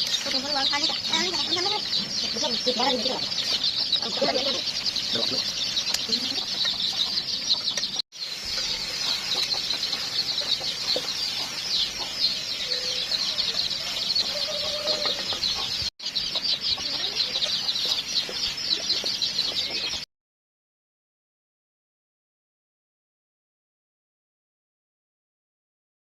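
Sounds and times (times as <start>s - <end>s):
chicks cheeping: 0.0s - 20.1s
low chicken calls: 8.6s - 15.9s.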